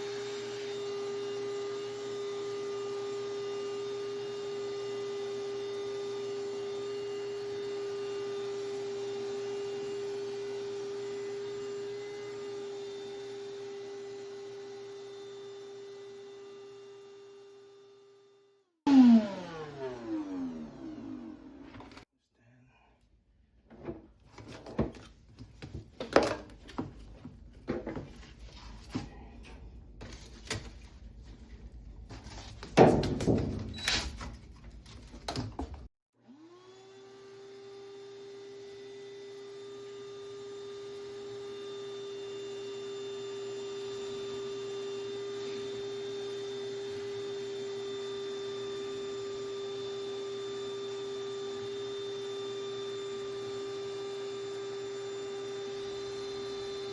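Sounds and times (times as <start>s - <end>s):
motor whine: 0.0s - 22.0s
knocks and thunks of handling: 23.7s - 29.2s, 32.2s - 35.9s.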